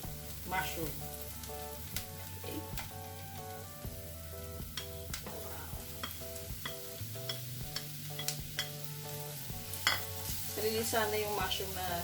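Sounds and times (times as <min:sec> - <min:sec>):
mushrooms sizzling in a pan: 0:00.0 - 0:12.0
soft background music: 0:00.0 - 0:12.0
utensil clicking against pan: 0:04.7 - 0:05.3, 0:06.0 - 0:08.8.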